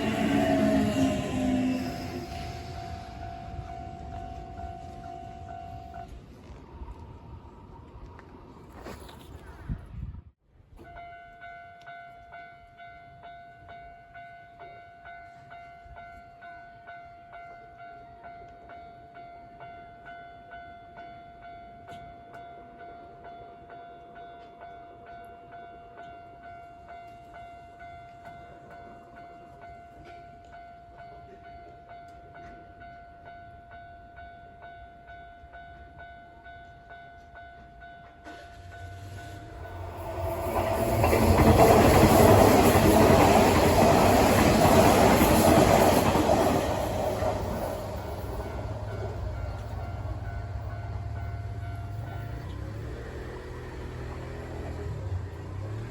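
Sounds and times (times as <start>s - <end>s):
level crossing warning bell ringing: 0.0s - 6.1s, 37.5s - 53.0s.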